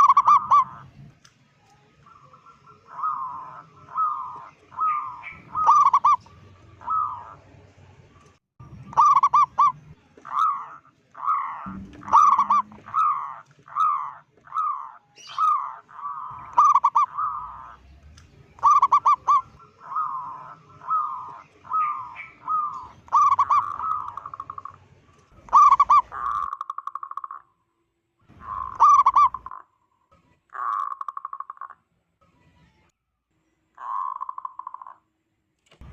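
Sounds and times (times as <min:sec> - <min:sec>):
dove cooing: 0:00.0 - 0:00.8, 0:02.7 - 0:07.4, 0:09.0 - 0:17.8, 0:18.6 - 0:24.8, 0:25.5 - 0:26.6, 0:28.4 - 0:29.6, 0:33.8 - 0:35.0.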